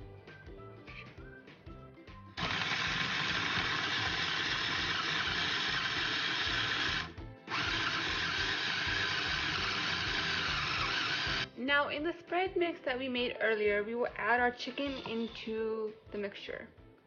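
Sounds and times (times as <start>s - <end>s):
food chopper motor grinding: 2.4s - 11.5s.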